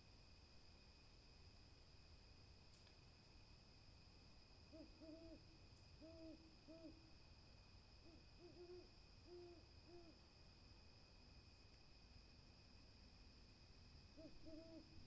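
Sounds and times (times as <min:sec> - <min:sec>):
owl hooting: 0:04.7 - 0:05.4, 0:06.0 - 0:07.0, 0:08.0 - 0:10.2, 0:14.2 - 0:15.0.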